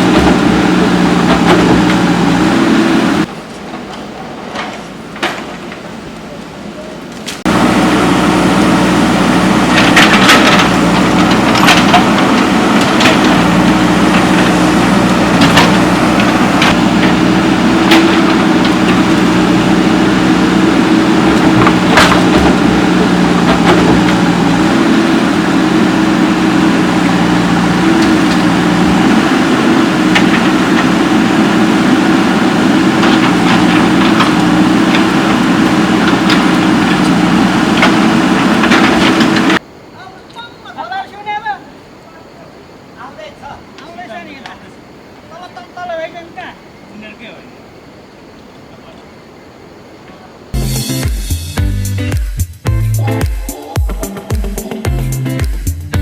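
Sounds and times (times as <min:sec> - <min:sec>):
sharp knocks and clanks: 0:00.0 - 0:02.7, 0:03.7 - 0:06.0, 0:09.6 - 0:31.2, 0:32.8 - 0:39.6
excavator diesel engine running: 0:00.0 - 0:39.9, 0:40.8 - 0:56.0.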